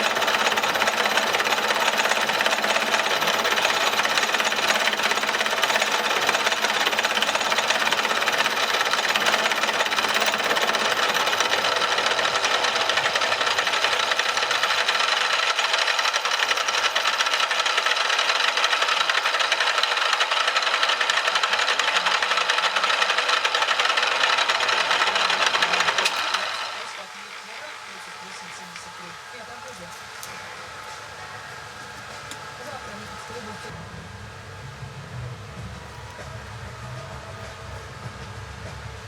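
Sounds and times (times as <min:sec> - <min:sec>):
power tool chattering: 0:00.0 - 0:27.4.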